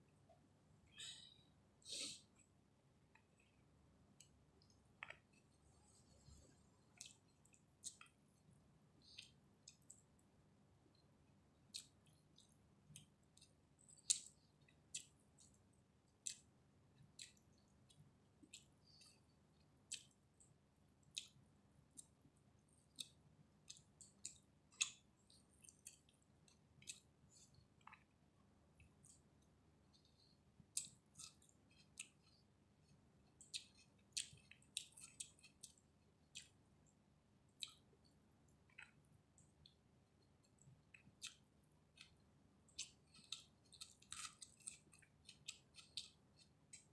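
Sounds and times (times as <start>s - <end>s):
person chewing food: 2.0s - 46.9s.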